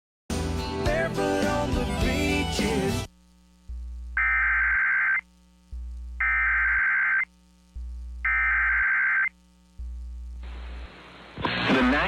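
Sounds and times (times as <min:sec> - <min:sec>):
low hum: 0:03.1 - 0:11.4
digital data tone bursts: 0:04.2 - 0:05.2, 0:06.2 - 0:07.3, 0:08.2 - 0:09.4.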